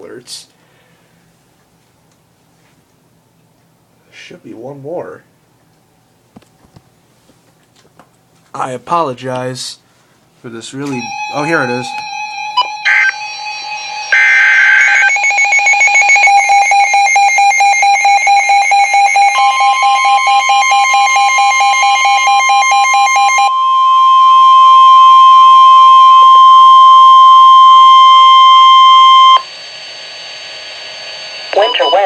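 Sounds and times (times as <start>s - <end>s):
steady warning alarm tone: 10.9s - 32.0s
data tones screech: 11.0s - 32.0s
rapidly pulsing beep: 11.0s - 32.0s.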